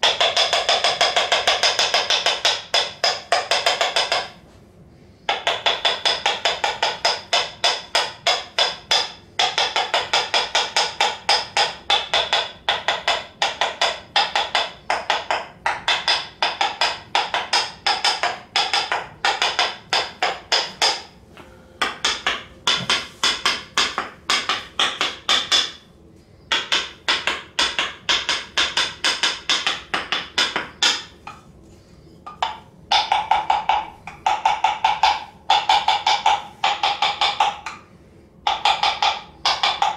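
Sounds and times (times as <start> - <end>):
percussive massage knocks: 0.0 - 4.5, 5.3 - 25.8, 26.5 - 31.5, 32.3 - 39.9.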